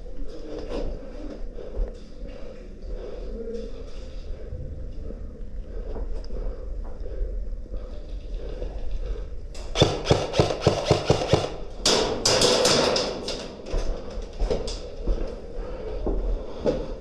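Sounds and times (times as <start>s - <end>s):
airsoft guns firing: 9.8s - 11.8s.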